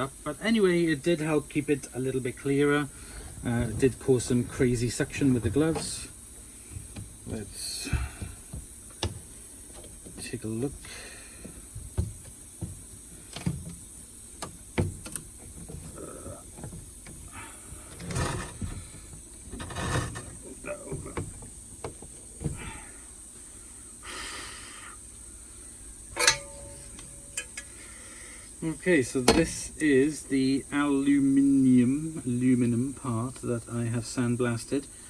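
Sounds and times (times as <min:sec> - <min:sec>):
handling knocks and clicks: 0:03.4 - 0:10.8, 0:11.4 - 0:22.7, 0:26.2 - 0:27.7.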